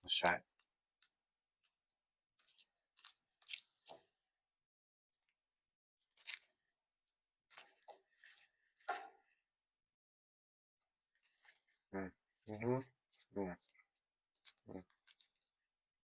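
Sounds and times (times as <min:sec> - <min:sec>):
snack wrapper crackling and tearing: 0:02.4 - 0:04.0, 0:06.1 - 0:06.6, 0:14.3 - 0:15.5.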